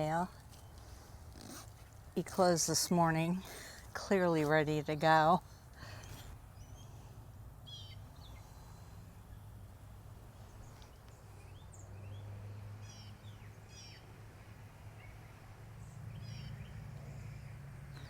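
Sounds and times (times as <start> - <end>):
small birds chirping: 5.9 - 9.8.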